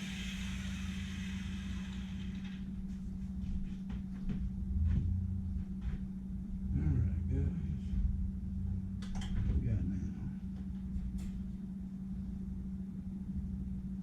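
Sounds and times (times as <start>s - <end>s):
hiss: 0.0s - 2.4s
low hum: 0.0s - 14.0s.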